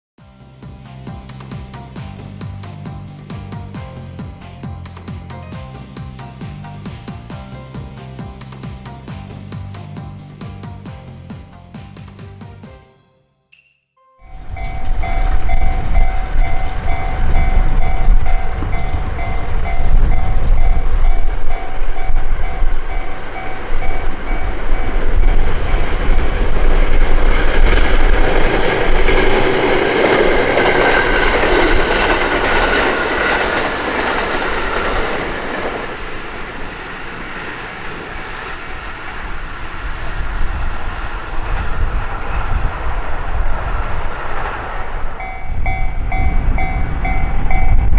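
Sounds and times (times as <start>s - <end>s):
train passing: 0.4s - 12.8s, 14.2s - 47.9s
level-crossing warning bell: 14.2s - 35.2s, 43.3s - 47.9s
falling whine: 14.2s - 47.9s
train wheel clatter: 14.3s - 47.9s.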